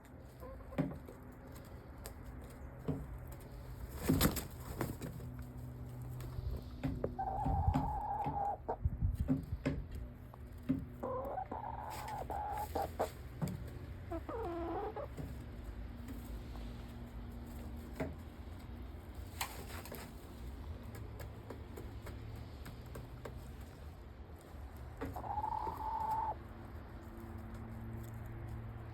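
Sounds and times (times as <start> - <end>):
chickens clucking softly: 0.1 - 2.2, 6.8 - 9.4, 10.7 - 15.5, 24.9 - 27.6.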